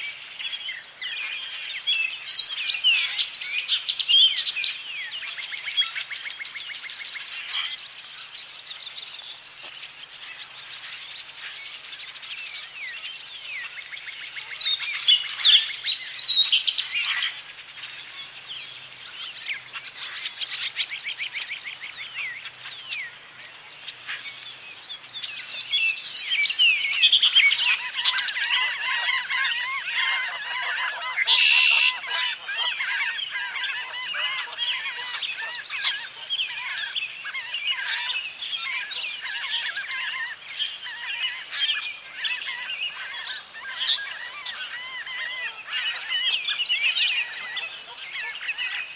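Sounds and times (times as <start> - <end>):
songbirds calling: 0.0 - 48.9
geese honking: 27.7 - 36.7.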